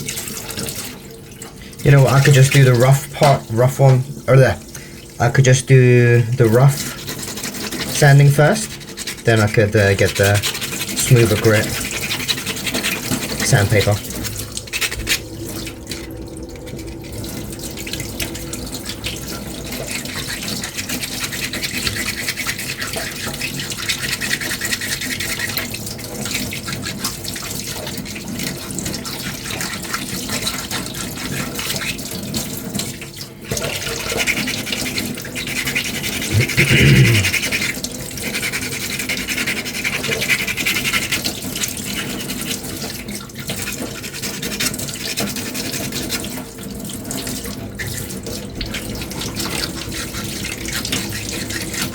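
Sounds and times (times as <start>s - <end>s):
sandpaper rasping: 6.8s - 8.0s, 8.6s - 9.3s, 10.1s - 15.2s, 19.9s - 25.7s, 33.6s - 42.7s, 43.4s - 46.4s, 49.1s - 51.9s.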